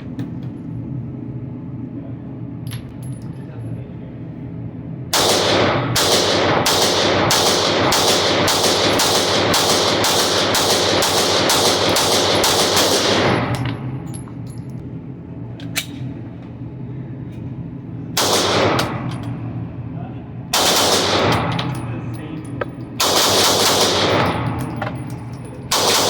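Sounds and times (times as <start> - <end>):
pistol shots: 5.1 - 13.6, 18.2 - 19.1, 20.5 - 21.7, 23.0 - 24.6, 25.7 - 26.0.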